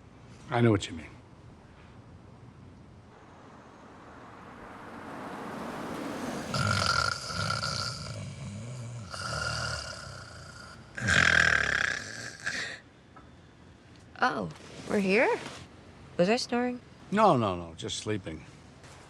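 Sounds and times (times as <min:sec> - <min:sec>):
woman snoring loudly: 0:06.5 - 0:12.8.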